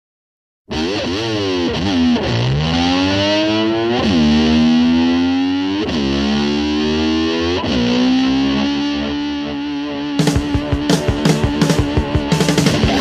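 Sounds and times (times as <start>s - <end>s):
distorted electric slide guitar: 0.7s - 13.0s
rock band with drums: 7.5s - 13.0s.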